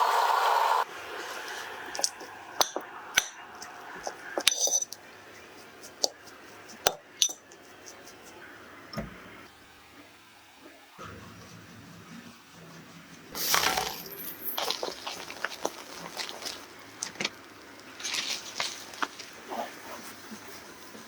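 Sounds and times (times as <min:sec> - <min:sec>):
cookware clinking: 0:04.3 - 0:05.0, 0:07.2 - 0:07.5
dull thump: 0:09.0 - 0:09.4.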